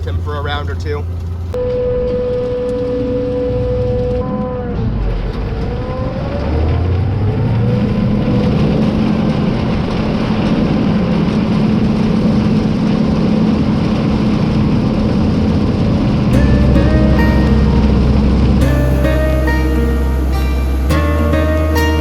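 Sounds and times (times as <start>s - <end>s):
vehicle engine running: 0.0s - 22.0s
low steady hum: 14.8s - 22.0s.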